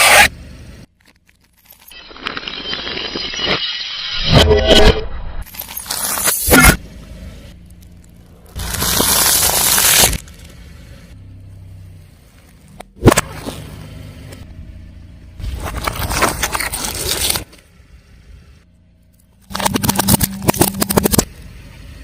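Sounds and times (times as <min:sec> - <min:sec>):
car tyre crushing crunchy objects: 0:05.4 - 0:06.9, 0:07.5 - 0:11.0, 0:12.2 - 0:14.0, 0:15.4 - 0:17.8, 0:19.4 - 0:21.4.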